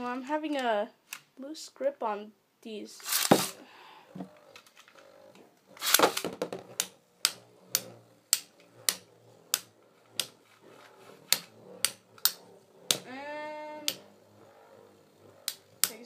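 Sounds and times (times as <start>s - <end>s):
spinning tops clashing with clacks: 3.0s - 3.6s, 5.7s - 10.6s.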